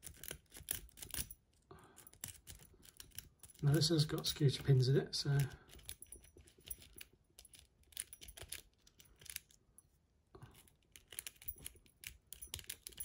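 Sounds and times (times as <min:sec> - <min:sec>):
lockpick clicking in padlock: 0:00.0 - 0:03.6, 0:05.7 - 0:09.6, 0:10.6 - 0:13.0.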